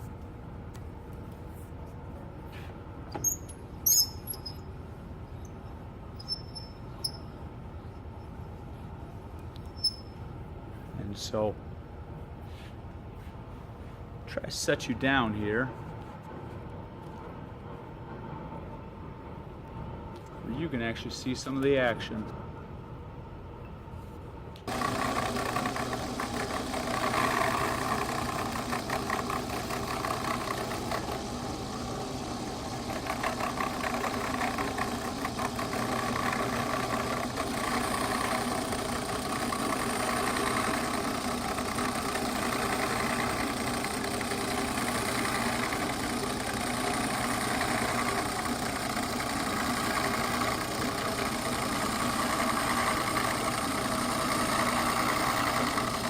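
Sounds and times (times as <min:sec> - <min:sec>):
grinding stone on blade: 0:24.7 - 0:31.3, 0:32.4 - 0:56.0.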